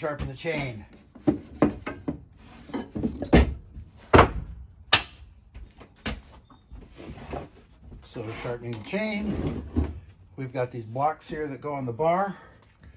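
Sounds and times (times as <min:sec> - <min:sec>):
hard objects knocking and clunking: 0:00.0 - 0:06.6.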